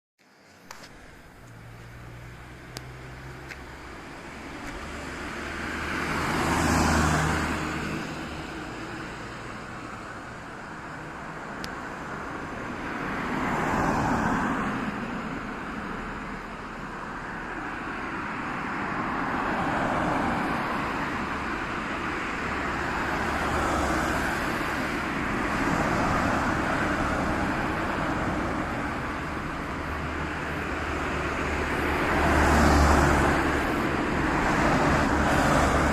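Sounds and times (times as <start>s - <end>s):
steady traffic hum: 0.2s - 35.9s
cars passing: 0.3s - 35.9s.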